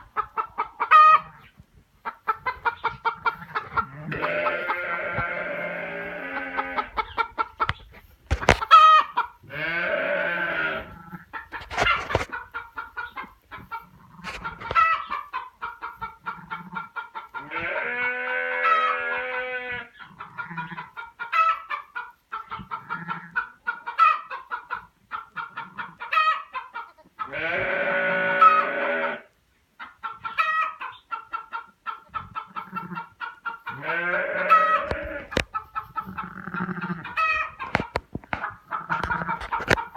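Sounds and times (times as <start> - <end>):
chicken drawn-out call: 0.0 - 39.9
chickens clucking: 0.0 - 39.9.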